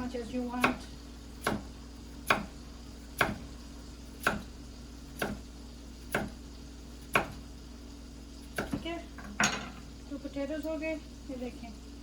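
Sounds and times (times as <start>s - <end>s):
knife slicing potatoes: 0.0s - 3.5s, 4.2s - 6.4s, 7.0s - 7.4s.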